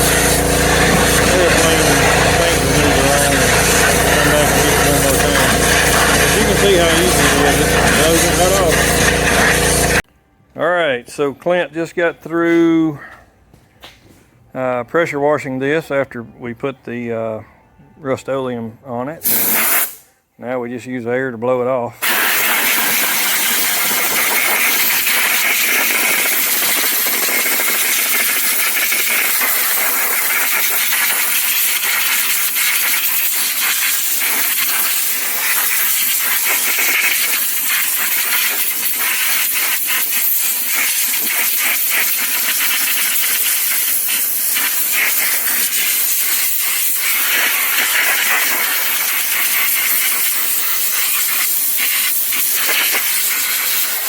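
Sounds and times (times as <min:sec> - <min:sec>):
air blow gun hissing: 0:00.0 - 0:10.0, 0:19.2 - 0:20.1, 0:22.0 - 0:54.0.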